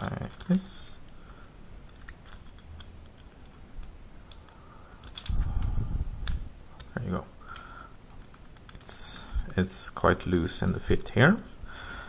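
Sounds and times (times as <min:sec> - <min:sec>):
small metal parts clicking: 0:00.0 - 0:09.2.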